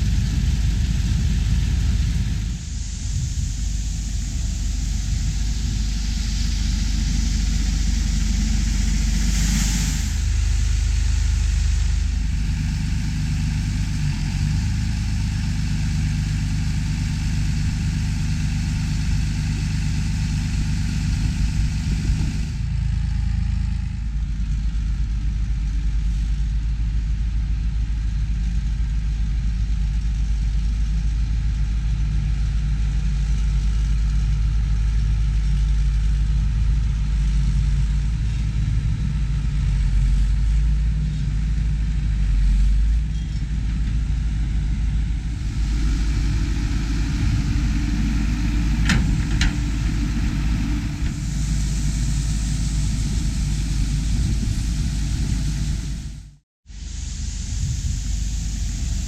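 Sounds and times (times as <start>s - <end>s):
hiss: 0.0s - 23.9s, 31.5s - 59.0s
heavy farm machinery engine: 0.0s - 59.0s.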